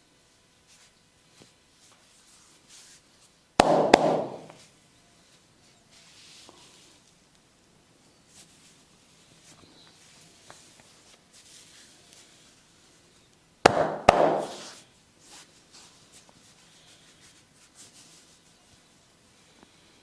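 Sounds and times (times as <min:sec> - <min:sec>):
hands rubbing skin and hair: 0:00.7 - 0:04.7, 0:08.3 - 0:12.6, 0:13.9 - 0:18.8
sharp hand slaps: 0:03.6 - 0:04.6, 0:13.7 - 0:14.7.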